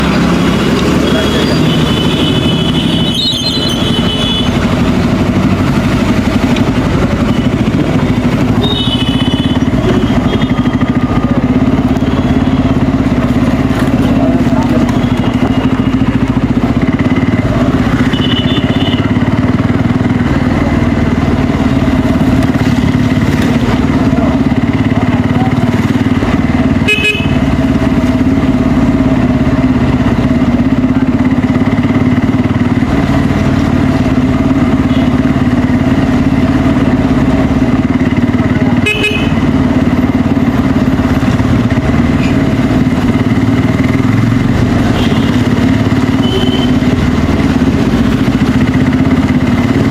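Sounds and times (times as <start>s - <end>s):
motorcycle engine cruising: 0.0s - 49.9s
short horn honks: 46.2s - 46.8s.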